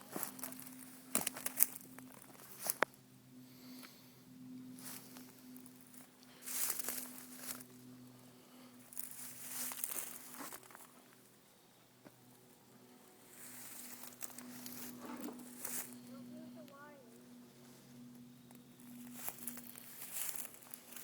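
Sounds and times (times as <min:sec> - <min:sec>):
rustling and crunching: 0:00.0 - 0:02.9, 0:04.8 - 0:07.8, 0:08.5 - 0:11.2, 0:13.3 - 0:16.5, 0:17.7 - 0:21.0
steady low hum: 0:00.0 - 0:21.0.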